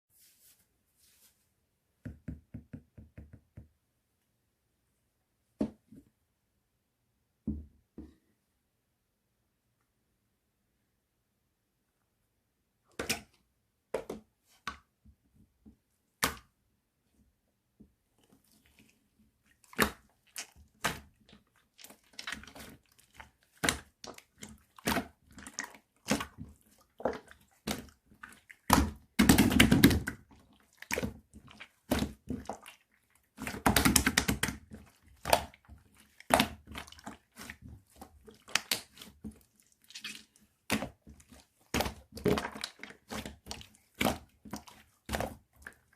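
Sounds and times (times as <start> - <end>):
rustling of craft materials: 0.1 - 1.6.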